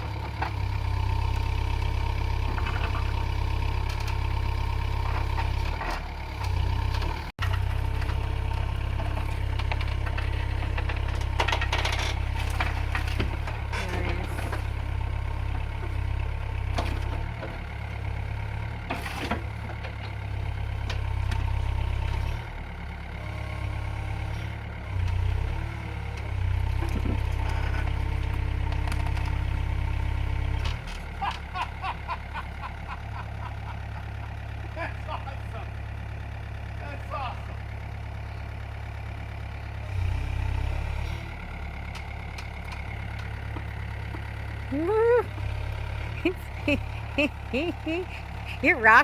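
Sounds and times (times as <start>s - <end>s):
heavy machine engine running: 0.0s - 49.0s
knocks and clanks of digging: 5.0s - 17.6s, 18.8s - 21.4s, 26.1s - 29.6s, 41.9s - 44.6s.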